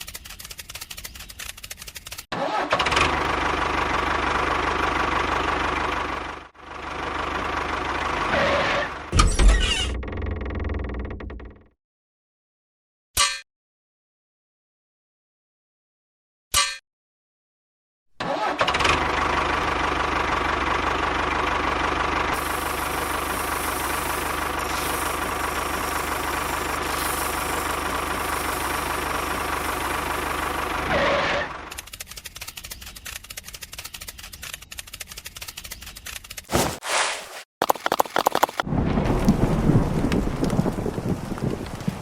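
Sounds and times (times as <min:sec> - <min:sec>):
small motor running: 0:22.4 - 0:30.8
fast rattling clatter: 0:37.6 - 0:38.6.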